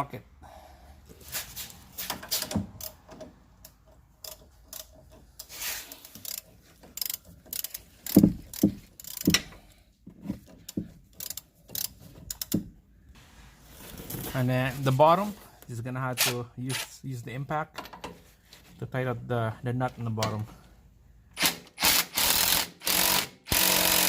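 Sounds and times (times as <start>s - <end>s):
hand ratchet clicking: 2.1s - 9.6s, 10.4s - 12.6s, 21.4s - 24.0s.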